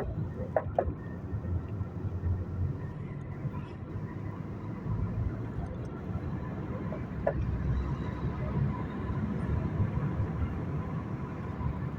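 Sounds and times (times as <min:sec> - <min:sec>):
car engine and road rumble: 0:00.0 - 0:11.9.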